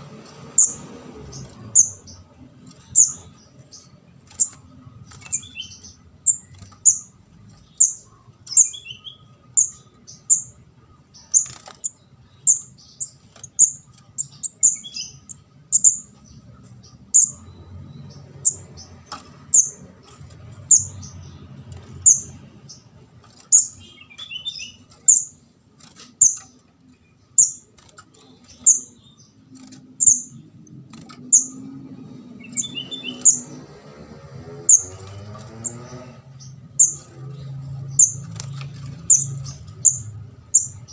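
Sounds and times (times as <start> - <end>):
lower bird twittering: 0.5 - 25.4, 26.0 - 33.8, 34.6 - 40.9
high bird chick chirps: 0.5 - 31.7.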